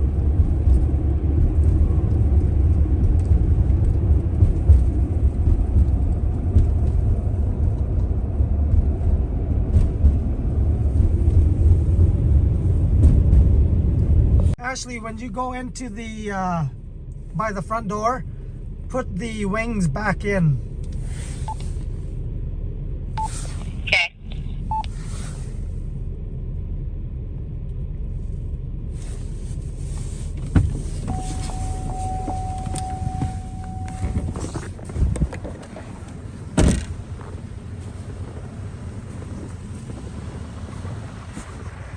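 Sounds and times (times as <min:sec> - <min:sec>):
vehicle engine rumbling: 0:00.0 - 0:41.9
high-pitched tone: 0:31.1 - 0:34.6.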